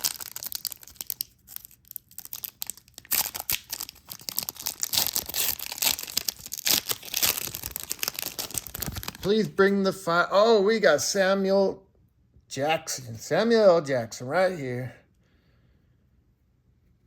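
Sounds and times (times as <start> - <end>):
trading card packaging crinkling: 0.0 - 9.6.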